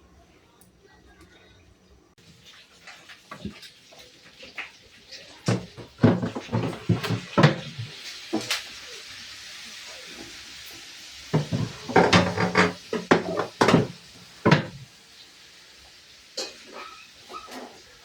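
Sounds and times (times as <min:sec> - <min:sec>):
household items clattering: 0:05.4 - 0:08.6, 0:11.4 - 0:14.9.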